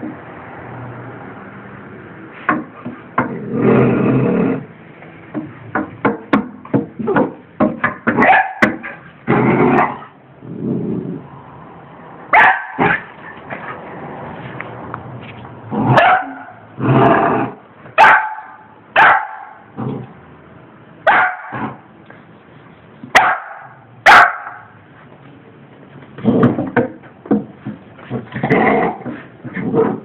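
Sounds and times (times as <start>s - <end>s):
dog barking: 8.2s - 9.0s, 12.3s - 13.1s, 15.9s - 16.6s, 18.0s - 19.6s, 21.1s - 21.8s, 23.1s - 24.7s.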